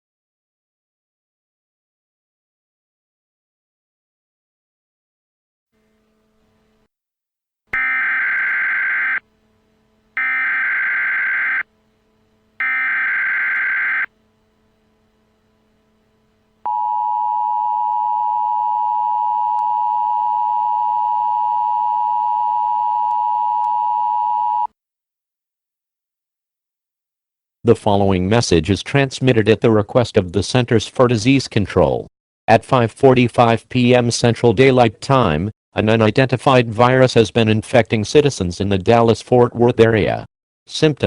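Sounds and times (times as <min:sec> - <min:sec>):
screeching digital data bursts: 0:07.8 - 0:09.2, 0:10.2 - 0:11.6, 0:12.6 - 0:14.1
two-tone attention signal: 0:07.8 - 0:09.2, 0:10.2 - 0:11.6, 0:12.6 - 0:14.1.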